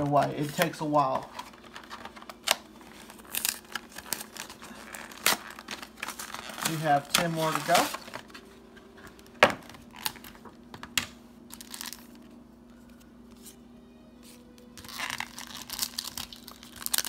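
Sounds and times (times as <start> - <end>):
foil wrappers crinkling and tearing: 0.0 - 8.5, 9.1 - 10.6, 11.5 - 12.3, 14.8 - 17.0.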